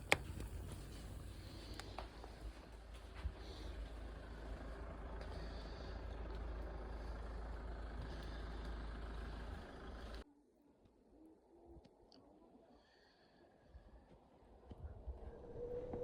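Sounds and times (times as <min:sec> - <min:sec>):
road noise: 0:00.0 - 0:10.2
vehicle engine rumble: 0:00.0 - 0:10.3.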